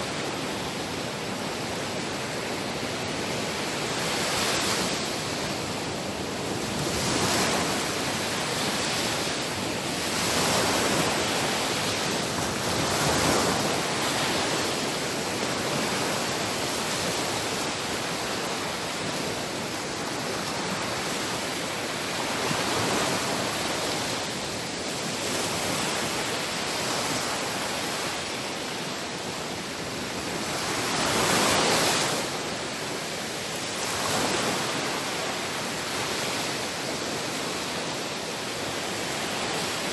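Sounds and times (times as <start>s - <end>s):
sea waves breaking: 0.0s - 39.9s.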